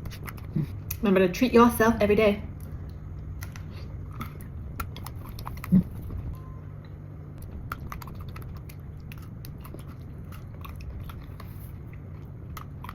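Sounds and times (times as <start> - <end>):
steady low hum: 0.0 - 12.9
crunchy chewing: 2.6 - 6.3, 7.4 - 12.9.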